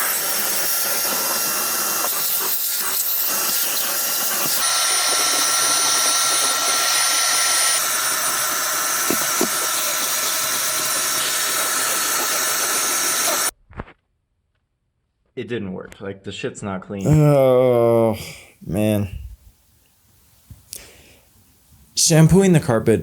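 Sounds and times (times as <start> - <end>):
carpet shampooer motor whine: 0.0 - 13.5
sucking hiss: 0.0 - 13.5, 17.0 - 22.9.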